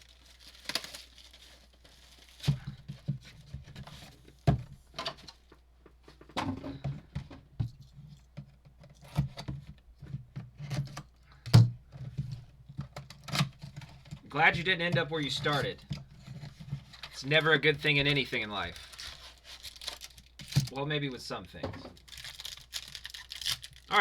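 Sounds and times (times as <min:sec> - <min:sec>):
packaging rustling: 0:00.0 - 0:04.4, 0:13.2 - 0:20.8, 0:21.9 - 0:24.0.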